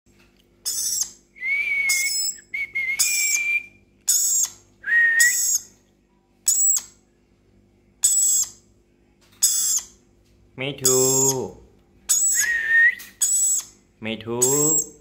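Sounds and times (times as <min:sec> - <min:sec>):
parrot whistling: 0:00.6 - 0:05.7, 0:06.5 - 0:06.9, 0:08.0 - 0:08.6, 0:09.4 - 0:10.0, 0:10.8 - 0:11.5, 0:12.1 - 0:13.8, 0:14.4 - 0:15.0.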